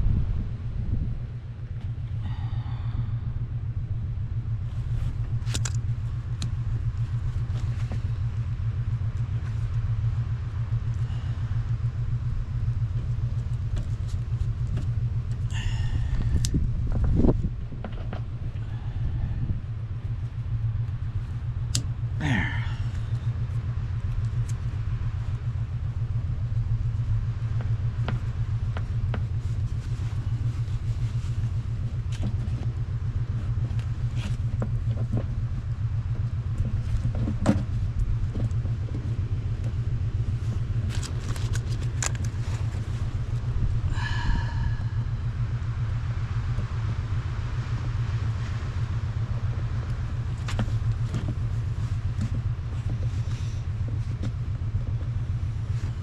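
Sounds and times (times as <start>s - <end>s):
engine running: 0.0s - 56.0s
handling clicks and knocks: 40.8s - 42.8s.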